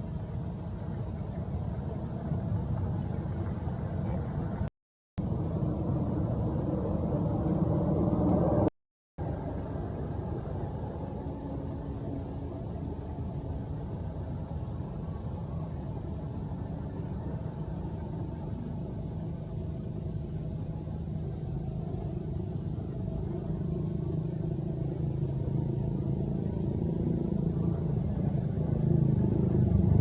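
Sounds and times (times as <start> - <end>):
vehicle engine rumbling: 21.5 - 30.0.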